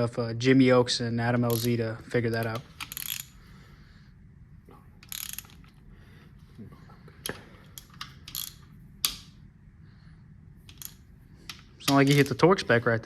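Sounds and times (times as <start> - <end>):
socket ratchet clicking: 1.5 - 1.8, 2.4 - 3.4, 5.0 - 5.8, 7.2 - 9.4, 10.6 - 12.4.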